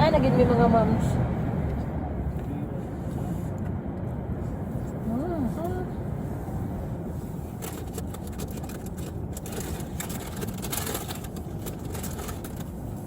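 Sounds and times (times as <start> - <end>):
car engine rumble: 0.0 - 13.0
light clicks and rustles: 7.2 - 13.0.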